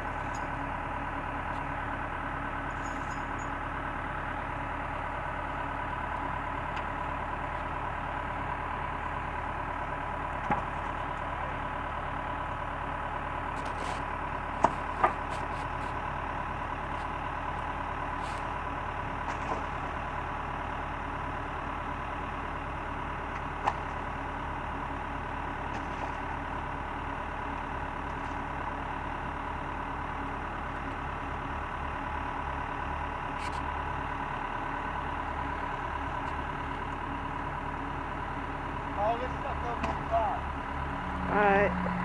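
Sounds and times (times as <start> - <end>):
backhoe engine idling: 0.0 - 42.0.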